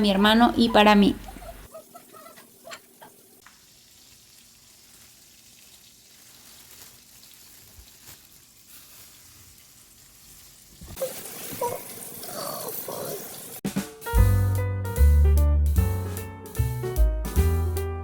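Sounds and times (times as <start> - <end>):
pot sizzling on stove: 0.0 - 13.6
loud music: 13.7 - 18.0.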